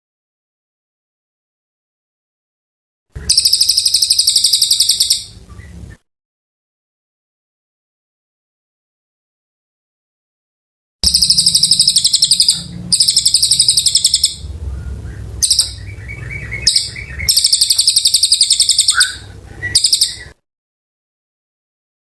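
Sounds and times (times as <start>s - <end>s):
bird singing rapid high trills: 3.2s - 5.9s, 11.0s - 20.4s
low hum: 11.0s - 20.3s.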